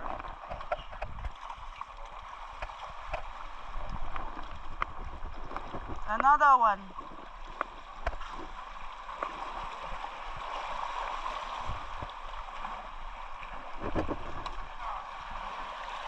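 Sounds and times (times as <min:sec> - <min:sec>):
faint clicks and knocks: 0:00.0 - 0:06.4, 0:07.5 - 0:08.4
water rushing: 0:00.0 - 0:16.0.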